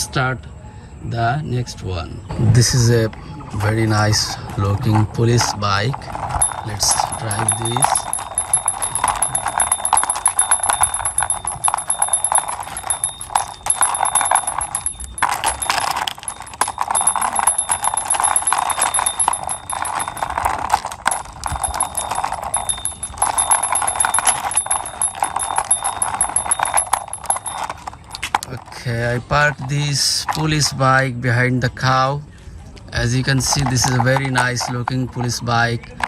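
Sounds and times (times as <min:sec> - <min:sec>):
toy wheels rattling along wall: 0:04.8 - 0:28.8, 0:33.3 - 0:35.8.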